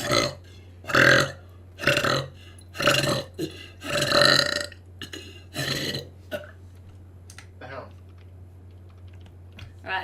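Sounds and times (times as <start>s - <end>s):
woman burping: 0.0s - 6.6s.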